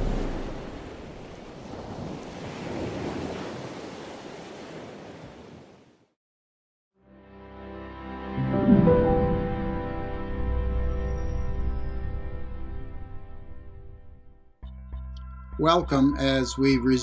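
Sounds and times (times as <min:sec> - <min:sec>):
ocean waves washing: 0:00.0 - 0:05.9
soft music: 0:07.0 - 0:17.0.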